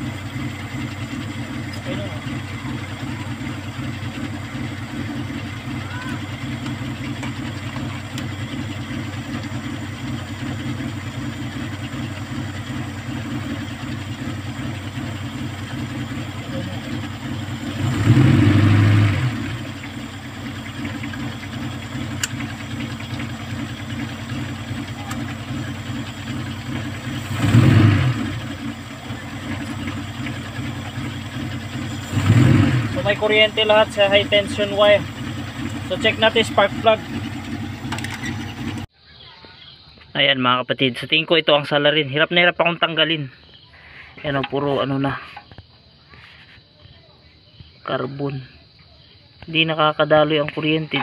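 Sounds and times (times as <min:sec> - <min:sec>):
car engine idling with misfire: 0:00.0 - 0:38.9
engine revving: 0:00.0 - 0:38.9.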